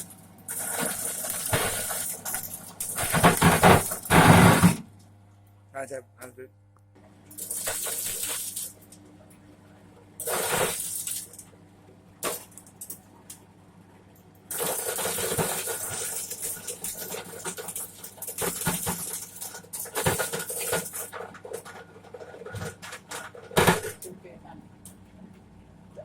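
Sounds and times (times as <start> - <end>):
corn kernels rattling against metal: 14.5 - 24.0.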